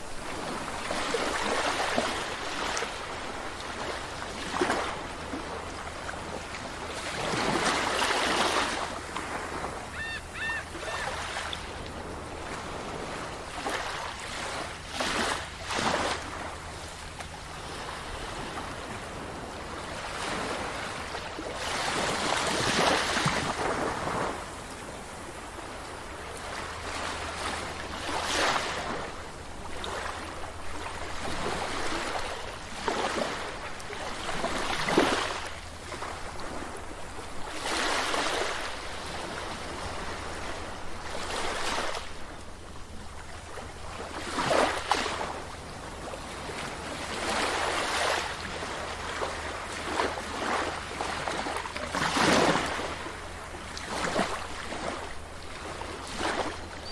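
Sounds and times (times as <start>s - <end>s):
sea waves breaking on beach: 0.0s - 56.9s
gull calling: 9.8s - 11.5s.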